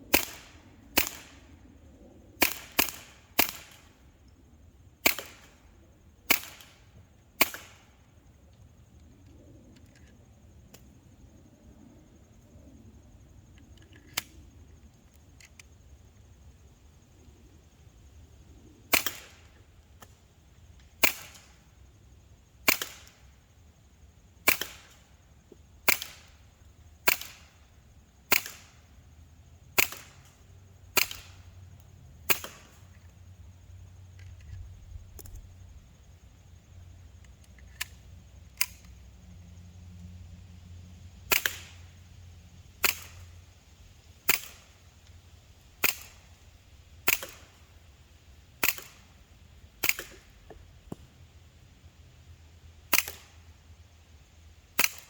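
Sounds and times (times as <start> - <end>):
air pistol shots popping: 0.1 - 1.4, 2.4 - 3.8, 5.0 - 5.5, 6.3 - 6.7, 7.4 - 7.8, 18.9 - 19.4, 22.7 - 23.2, 24.5 - 25.0, 25.9 - 26.3, 27.1 - 27.5, 28.3 - 28.7, 29.8 - 30.2, 31.0 - 31.4, 32.3 - 32.8, 41.3 - 41.8, 42.8 - 43.2, 44.3 - 44.6, 45.8 - 46.2, 47.1 - 47.6, 48.6 - 49.0, 49.8 - 50.3, 52.9 - 53.3.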